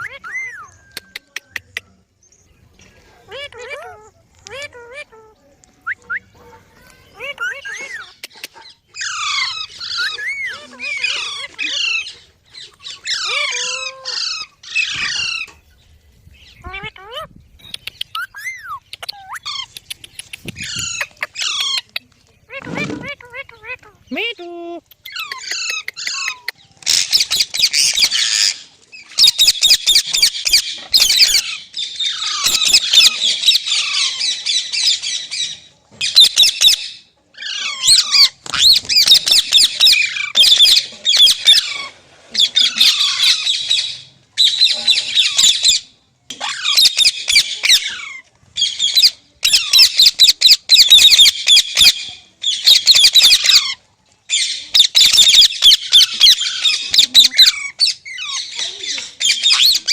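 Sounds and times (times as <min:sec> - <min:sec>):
parrot screeching: 0:00.0 - 0:00.7, 0:09.0 - 0:12.2, 0:12.8 - 0:15.5, 0:37.4 - 0:45.8, 0:59.2 - 0:59.9.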